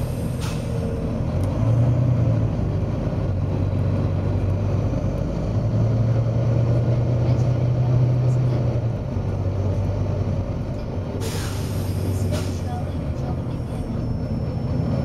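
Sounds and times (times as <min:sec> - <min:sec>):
air brake hiss: 0:00.0 - 0:00.9, 0:11.2 - 0:12.8
bus diesel engine running: 0:00.0 - 0:15.0.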